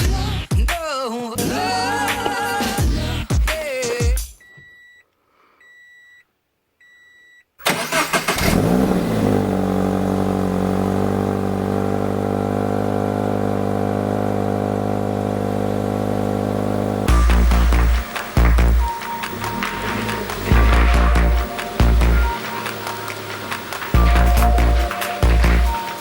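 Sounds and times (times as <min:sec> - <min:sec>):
music: 0:00.0 - 0:04.4, 0:17.1 - 0:26.0
electronic car chimes: 0:04.4 - 0:08.7, 0:17.0 - 0:26.0
car engine starting and idling: 0:07.6 - 0:26.0.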